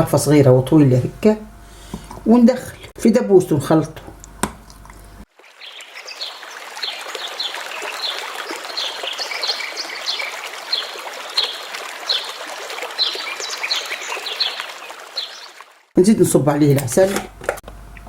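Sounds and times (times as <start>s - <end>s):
stream trickling: 4.6s - 16.0s.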